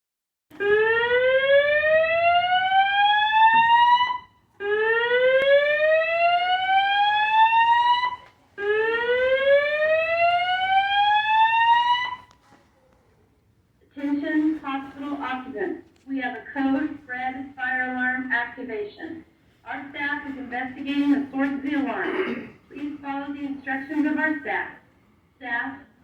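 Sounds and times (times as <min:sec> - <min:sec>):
fire alarm whoop tone: 0:00.6 - 0:12.4.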